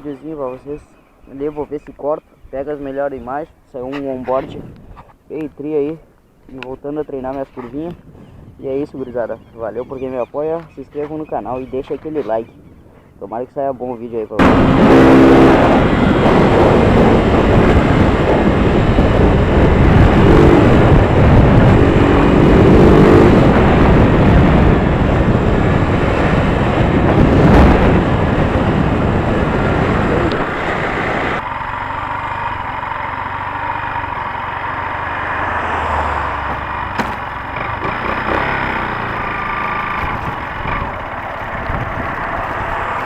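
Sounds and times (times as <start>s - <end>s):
wind rush on microphone: 2.4s - 5.2s, 6.9s - 13.2s, 14.4s - 31.4s, 35.4s - 43.0s
motorcycle engine: 14.4s - 43.0s.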